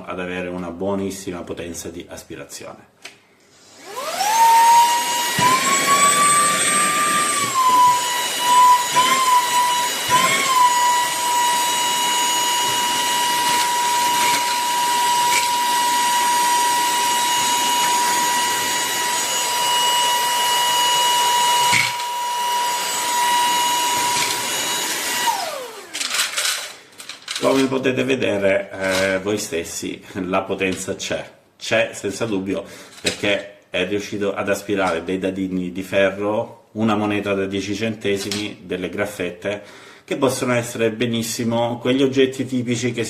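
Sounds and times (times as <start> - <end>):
handheld vacuum motor whine: 3.5 - 26.8.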